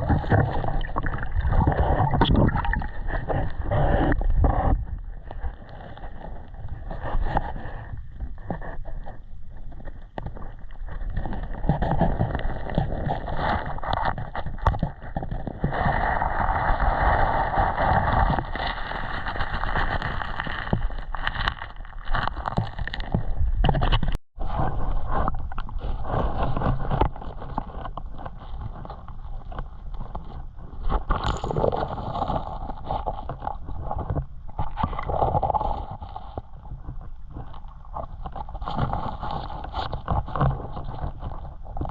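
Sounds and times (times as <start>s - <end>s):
water sloshing and splashing: 0.0s - 7.8s
scraping and knocking in water: 0.0s - 41.9s.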